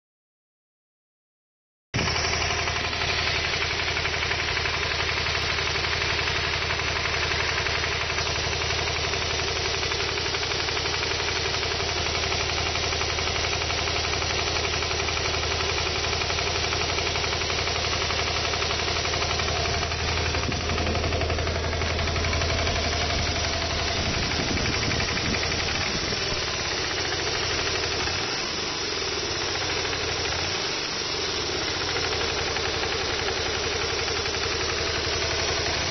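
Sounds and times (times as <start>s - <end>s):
abnormal mechanical engine noise: 2.0s - 35.9s
motorcycle engine idling: 2.0s - 35.9s.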